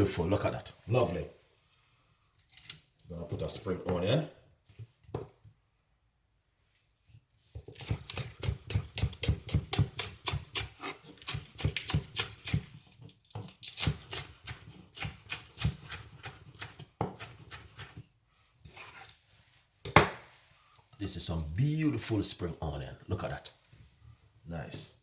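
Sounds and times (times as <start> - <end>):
knife chopping on cutting board: 7.6 - 12.8, 13.4 - 18.0, 19.9 - 20.2.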